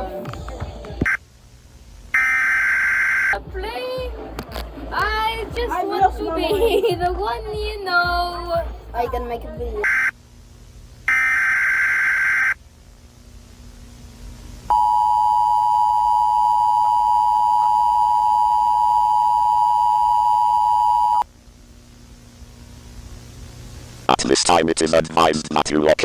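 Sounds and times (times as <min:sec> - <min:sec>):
buzzing data burst: 0:02.1 - 0:03.4, 0:09.8 - 0:10.2, 0:11.0 - 0:12.6
two-tone attention signal: 0:14.7 - 0:21.2.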